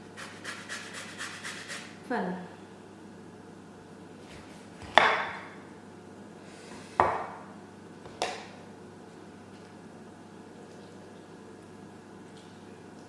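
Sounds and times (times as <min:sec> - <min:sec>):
utensil knocking on hard surface: 0:07.0 - 0:07.3.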